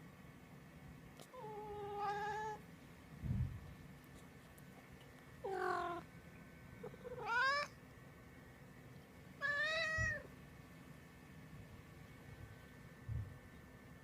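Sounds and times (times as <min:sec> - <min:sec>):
cat meowing: 0:01.4 - 0:02.6, 0:05.5 - 0:06.0, 0:07.0 - 0:07.8, 0:09.4 - 0:10.3.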